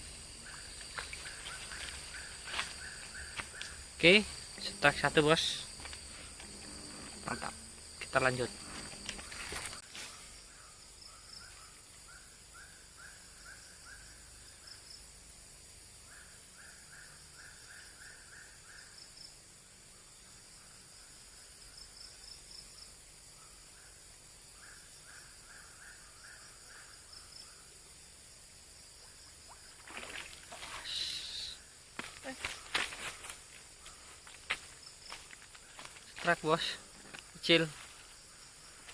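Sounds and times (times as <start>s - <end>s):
insect drone: 0.0s - 38.9s
rustle and scuffing: 0.5s - 10.4s, 32.0s - 38.9s.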